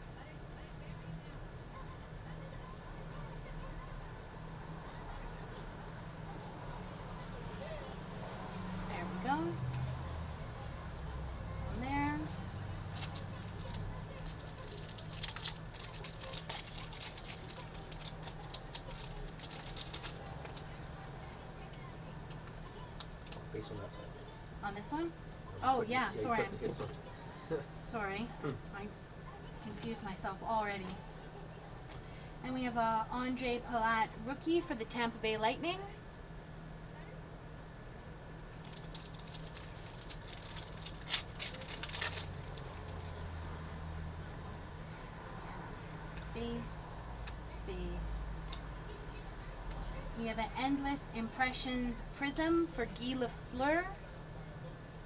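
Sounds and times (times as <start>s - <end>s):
foil wrapper crackling: 12.9s - 20.8s, 38.6s - 43.2s
cards clicking and rustling: 38.6s - 43.2s.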